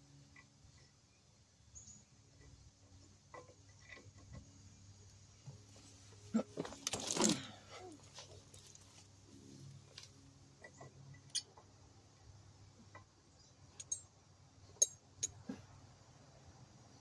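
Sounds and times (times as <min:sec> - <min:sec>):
metallic clicks of hand tools: 0:13.8 - 0:14.1.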